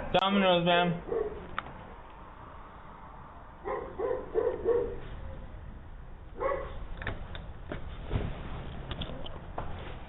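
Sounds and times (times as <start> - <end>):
dog barking: 1.1 - 1.5, 3.6 - 5.0, 6.4 - 6.8.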